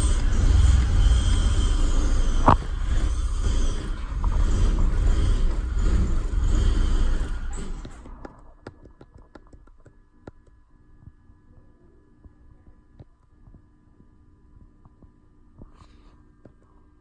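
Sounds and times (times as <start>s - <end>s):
car engine running rough: 0.0s - 8.4s
low steady hum: 0.0s - 17.0s.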